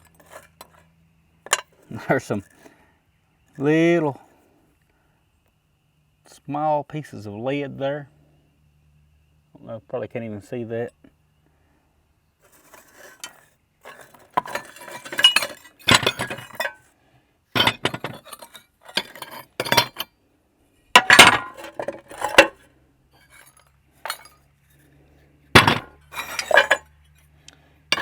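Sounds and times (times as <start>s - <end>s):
ceramic tile pieces clattering: 12.5s - 16.8s, 17.6s - 20.0s, 21.0s - 22.6s, 23.2s - 24.4s, 25.6s - 26.9s.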